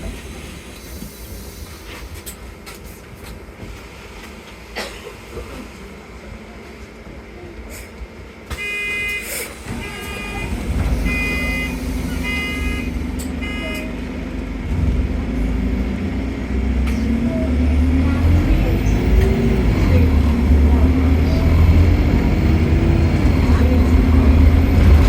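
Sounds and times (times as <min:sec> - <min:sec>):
bus engine rumble: 0:00.0 - 0:25.0
bus door warning beeps: 0:08.5 - 0:14.0.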